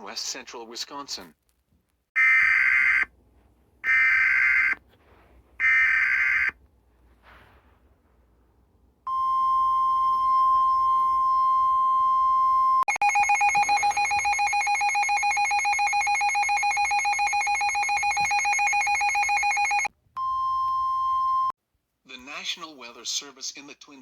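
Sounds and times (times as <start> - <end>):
pulsing two-tone alert: 9.4 - 19.9.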